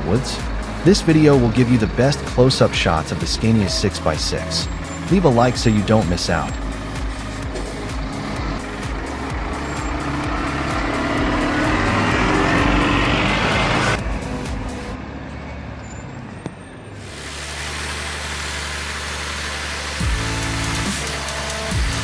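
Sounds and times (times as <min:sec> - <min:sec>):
low engine drone: 0:00.0 - 0:15.5
diesel truck engine revving: 0:00.0 - 0:22.0.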